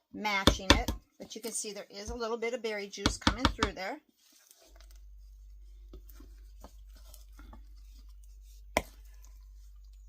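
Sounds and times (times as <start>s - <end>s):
low steady hum: 0.1s - 10.0s
spoon squelching and scraping batter: 3.1s - 10.0s.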